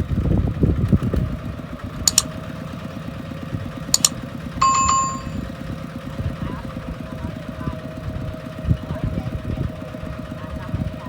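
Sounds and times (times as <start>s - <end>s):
diesel engine chugging: 0.0s - 11.0s
sharp clicks: 2.1s - 2.3s, 4.0s - 5.4s
short beep: 4.0s - 5.4s.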